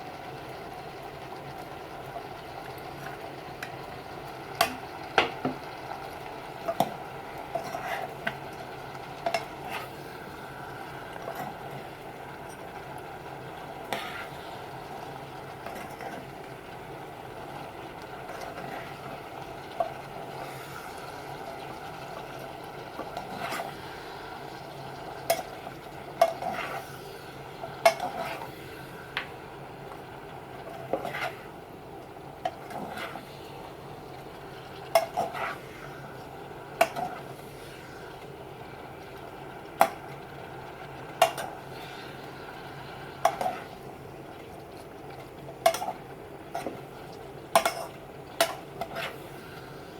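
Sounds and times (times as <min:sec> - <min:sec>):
steady background hum: 0:00.0 - 0:49.9
utensil scraping a pan: 0:07.6 - 0:08.4, 0:09.3 - 0:10.2, 0:13.9 - 0:14.6, 0:23.0 - 0:23.8, 0:26.2 - 0:27.0, 0:27.9 - 0:28.6, 0:30.8 - 0:31.5, 0:32.5 - 0:33.3, 0:35.0 - 0:35.9, 0:48.8 - 0:49.5.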